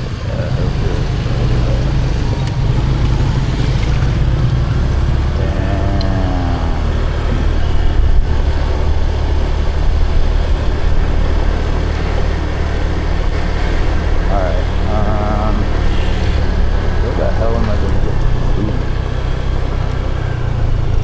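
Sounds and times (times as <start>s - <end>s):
vehicle engine and road rumble: 0.0s - 21.0s
faint wavering voice-like sound: 5.3s - 10.6s, 14.3s - 15.9s.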